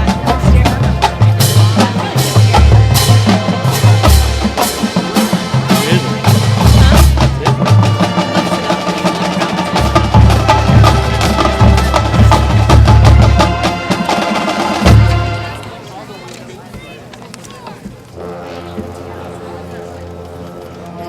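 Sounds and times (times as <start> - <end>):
drums and percussion striking: 0.0 - 15.8.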